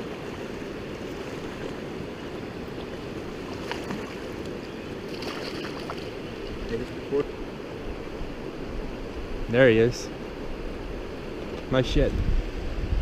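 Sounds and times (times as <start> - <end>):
river water rushing: 0.0 - 11.5.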